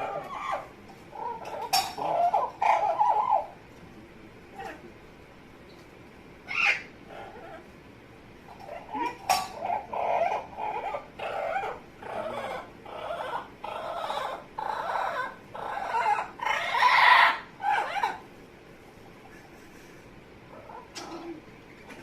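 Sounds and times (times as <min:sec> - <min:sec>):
parrot vocalizing: 0:00.0 - 0:03.6, 0:06.4 - 0:07.7, 0:08.5 - 0:18.2.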